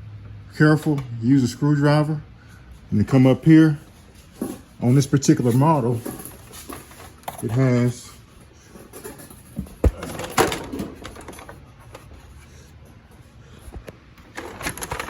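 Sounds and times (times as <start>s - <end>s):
knocks and clicks handling dryer: 9.5s - 11.6s.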